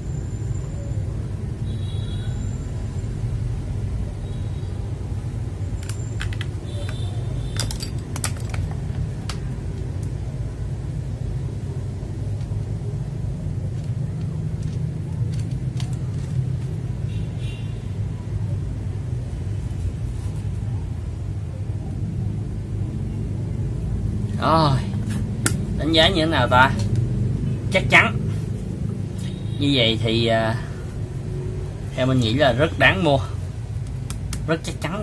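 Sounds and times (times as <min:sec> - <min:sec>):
plastic parts clicking: 0:05.8 - 0:09.5, 0:13.7 - 0:16.4.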